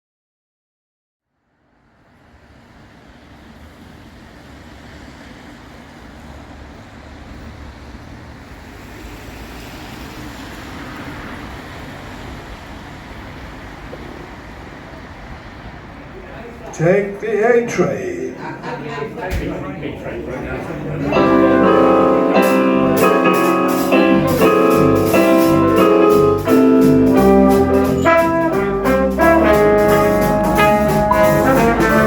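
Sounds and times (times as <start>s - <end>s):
low rumbling hiss: 12.0s - 32.0s
pub room noise: 15.4s - 32.0s.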